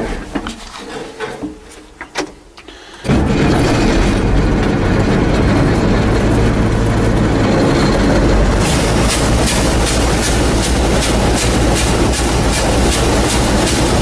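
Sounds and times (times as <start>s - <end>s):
combine diesel engine running: 3.1s - 14.0s.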